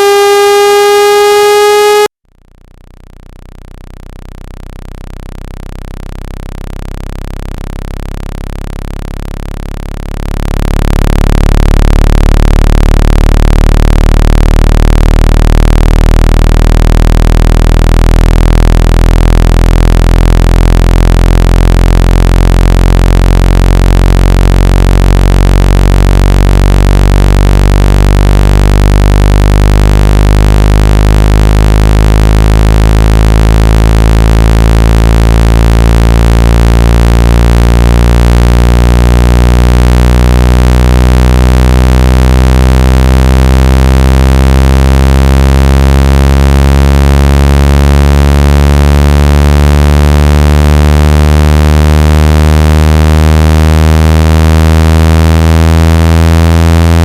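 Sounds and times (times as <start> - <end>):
low synthetic tone: 0.0 - 57.0.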